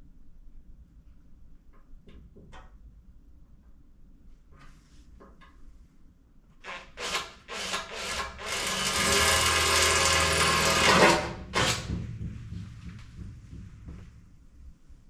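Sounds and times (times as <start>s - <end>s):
power drill whining through metal: 6.6s - 12.0s.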